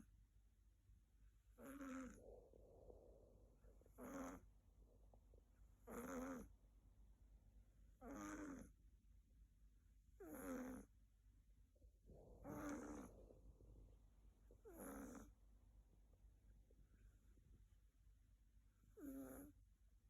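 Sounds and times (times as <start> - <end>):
kitten snoring: 1.4 - 6.6, 7.9 - 8.8, 10.1 - 11.0, 12.1 - 15.5, 18.8 - 19.7.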